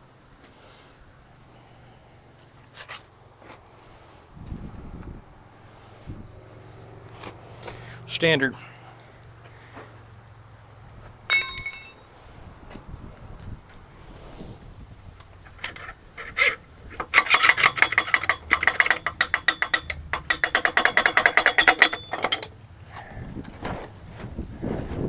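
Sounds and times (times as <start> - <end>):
metallic knocks: 11.3 - 12.0.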